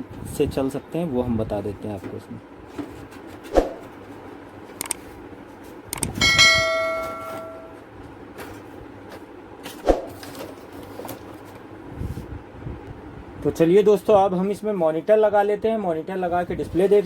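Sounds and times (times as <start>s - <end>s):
metal ringing like a bell: 6.2s - 7.8s.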